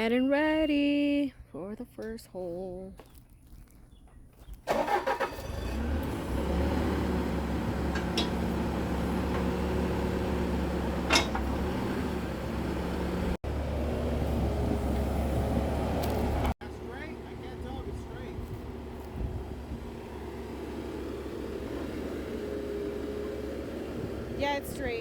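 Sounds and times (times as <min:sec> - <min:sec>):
engine starting and droning: 0:04.6 - 0:25.0
sharp metal clanks: 0:07.9 - 0:08.7, 0:11.0 - 0:11.6.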